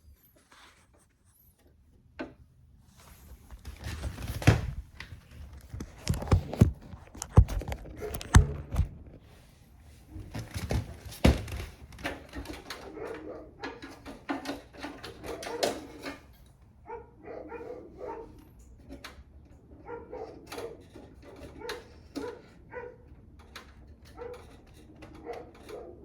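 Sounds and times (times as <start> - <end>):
card knocking into slot: 6.1 - 9.2.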